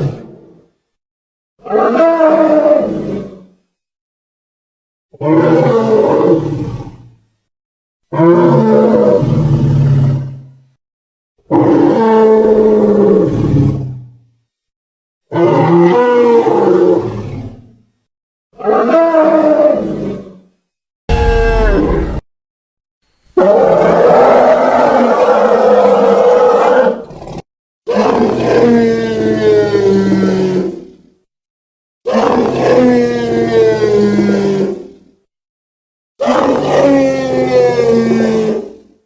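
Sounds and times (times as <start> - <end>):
dinosaur-style roars: 1.6 - 3.5, 5.2 - 7.1, 8.1 - 10.5, 11.5 - 14.1, 15.3 - 17.8, 18.6 - 20.4, 21.1 - 22.2, 23.4 - 31.0, 32.1 - 35.0, 36.2 - 38.9.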